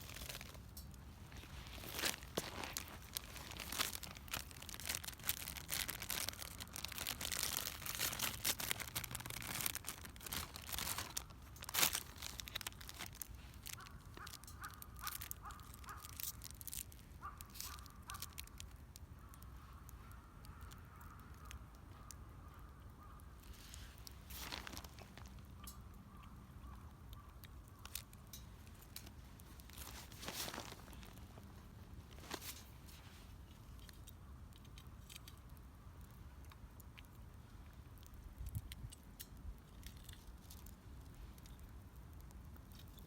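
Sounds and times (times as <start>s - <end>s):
wood fire crackling: 0.0s - 17.1s
rustling and snapping: 0.0s - 19.5s, 23.4s - 26.4s, 27.7s - 35.6s.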